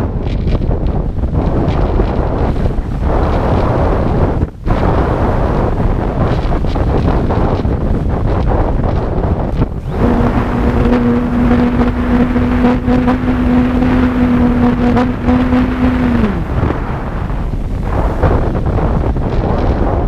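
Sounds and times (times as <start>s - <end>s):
wind buffeting microphone: 0.0s - 20.0s
low hum: 9.5s - 20.0s.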